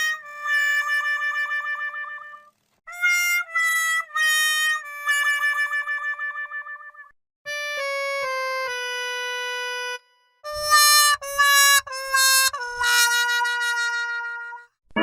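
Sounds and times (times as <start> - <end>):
harmonica-like fail jingle: 7.5 - 15.0.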